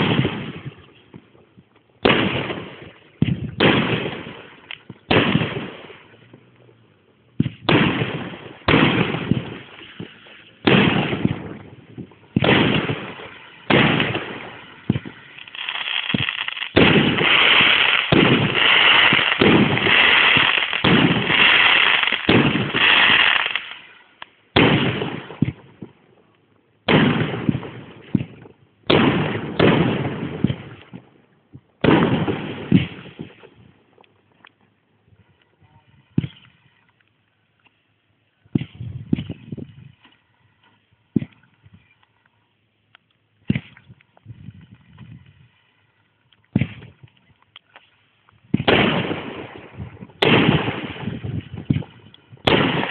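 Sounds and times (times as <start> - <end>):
fireworks bursting: 0.0 - 6.6, 7.4 - 26.0, 26.8 - 31.1, 31.8 - 33.8, 36.0 - 36.8, 46.5 - 52.9.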